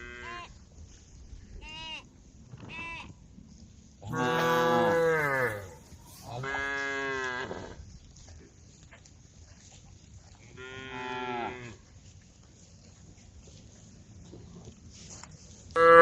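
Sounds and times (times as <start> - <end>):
cows mooing: 4.1 - 7.7.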